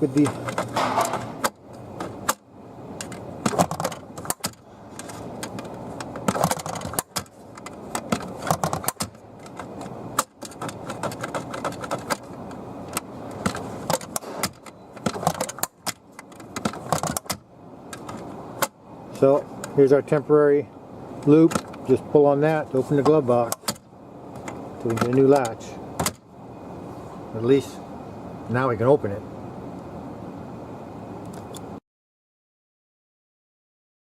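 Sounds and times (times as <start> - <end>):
glove box latch clicking and rattling: 0.1 - 18.8, 21.2 - 21.9, 23.0 - 26.3.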